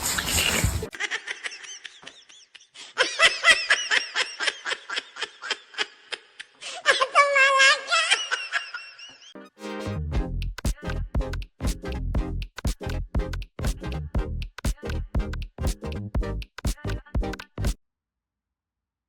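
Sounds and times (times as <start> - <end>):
high-pitched laughter: 0.4 - 9.3.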